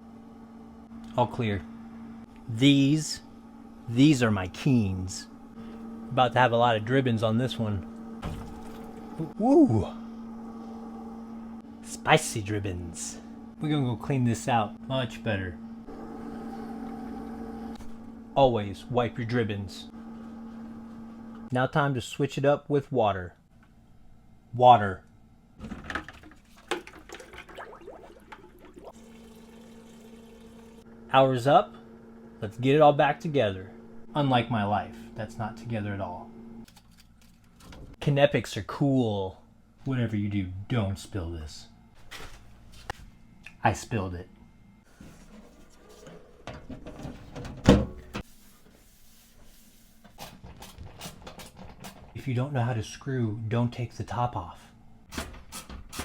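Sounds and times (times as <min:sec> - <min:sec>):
steady low hum: 0:00.0 - 0:25.6, 0:28.1 - 0:56.0
loud thump: 0:08.2 - 0:08.8
water gurgling and splashing: 0:26.7 - 0:30.7
equipment knocking and clattering: 0:50.2 - 0:52.2.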